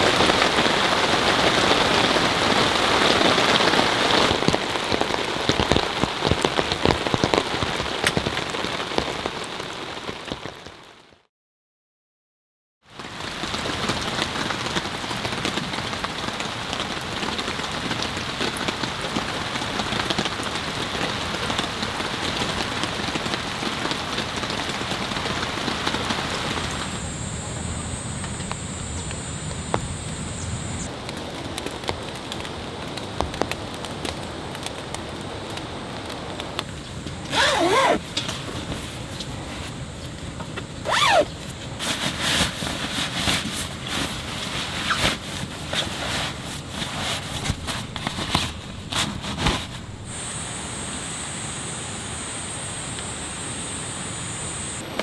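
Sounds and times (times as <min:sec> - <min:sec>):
heavy rain falling: 0:00.0 - 0:11.1, 0:13.0 - 0:55.0.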